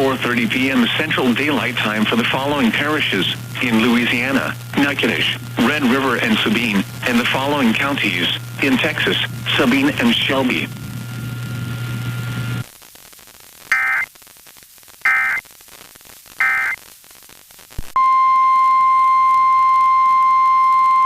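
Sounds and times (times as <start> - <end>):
radio broadcast hiss and hum: 0.0 - 18.0
data bursts: 13.7 - 14.1, 15.0 - 15.4, 16.4 - 16.8
steady warning alarm tone: 13.7 - 14.1, 15.1 - 15.4, 16.4 - 16.8.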